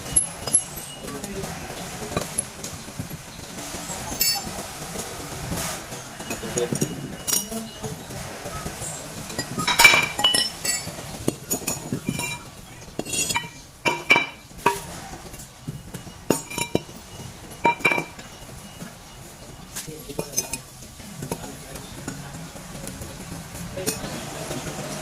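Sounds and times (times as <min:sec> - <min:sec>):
metal tools clinking and knocking: 0:00.0 - 0:04.6, 0:05.9 - 0:08.0, 0:08.8 - 0:22.2.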